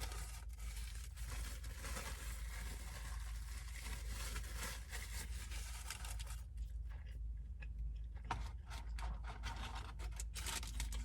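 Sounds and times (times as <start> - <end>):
crinkling wrapper: 0.0 - 11.0.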